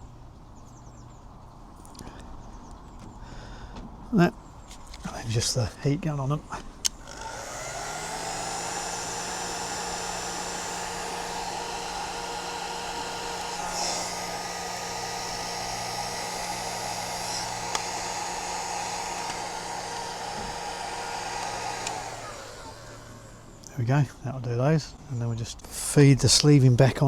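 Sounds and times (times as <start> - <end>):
heat gun blowing: 6.7 - 23.7.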